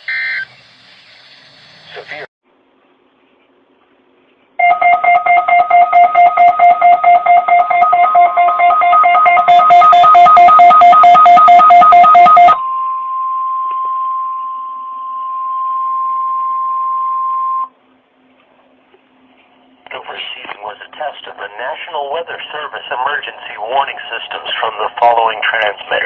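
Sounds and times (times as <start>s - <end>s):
alert alarms beeping: 4.6s - 17.7s
steady warning alarm tone: 4.6s - 17.8s.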